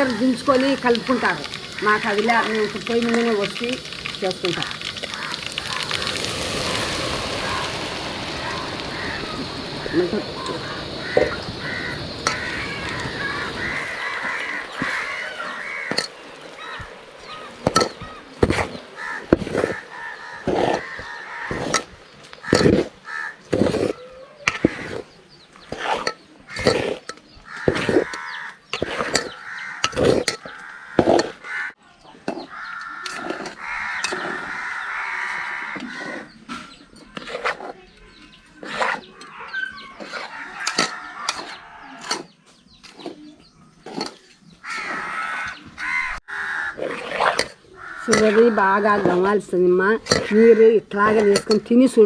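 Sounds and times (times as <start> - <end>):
crows cawing: 0.0 - 0.6, 4.4 - 25.0, 26.4 - 31.8, 32.4 - 36.4, 39.2 - 42.0, 44.6 - 49.4, 50.0 - 51.7.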